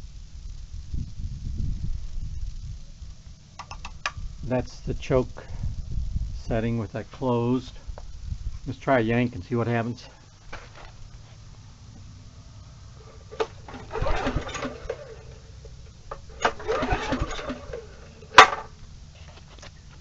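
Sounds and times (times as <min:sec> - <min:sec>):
generator engine cranking: 0:12.7 - 0:19.0.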